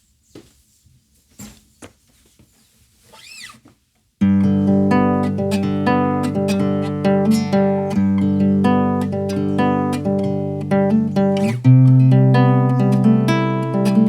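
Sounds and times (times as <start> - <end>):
acoustic guitar chords and melody: 4.2 - 14.0.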